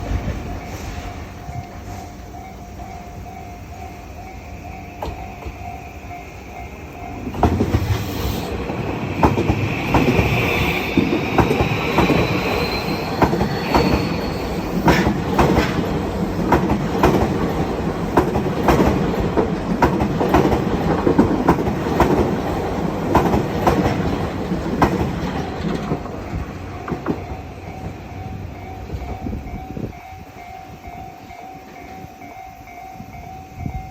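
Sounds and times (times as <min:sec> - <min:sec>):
electric train passing: 0:00.0 - 0:33.9
level crossing warning bell: 0:00.3 - 0:07.5, 0:27.2 - 0:33.9
train wheels clacking over rail joints: 0:05.0 - 0:05.8, 0:06.9 - 0:28.2.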